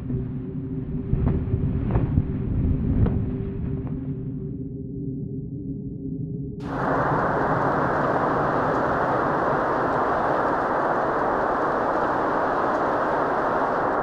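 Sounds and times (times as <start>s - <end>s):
steady rushing noise: 6.6s - 14.0s.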